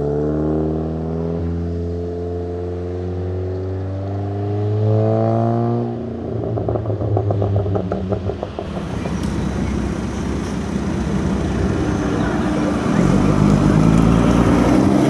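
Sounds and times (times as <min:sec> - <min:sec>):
car engine revving: 0:00.0 - 0:15.0
exhaust pops and crackles: 0:06.1 - 0:15.0.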